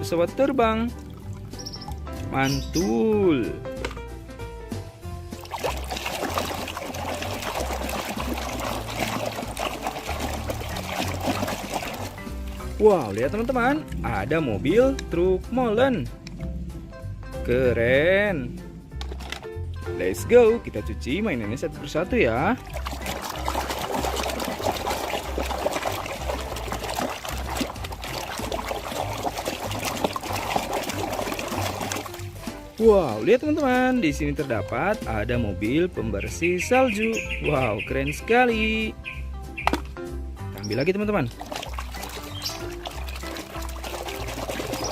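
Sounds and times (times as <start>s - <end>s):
water pouring and trickling: 0.0s - 3.9s, 5.0s - 16.5s, 19.0s - 38.2s, 39.0s - 44.9s
toy clicks and splashes: 41.3s - 44.9s.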